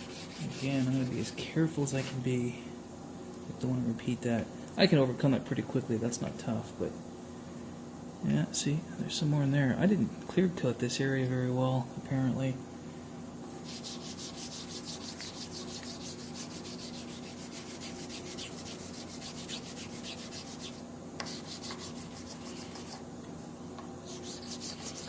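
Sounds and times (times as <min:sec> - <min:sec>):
hand wet sanding strokes: 0:00.0 - 0:02.3, 0:13.6 - 0:23.0, 0:24.0 - 0:25.0.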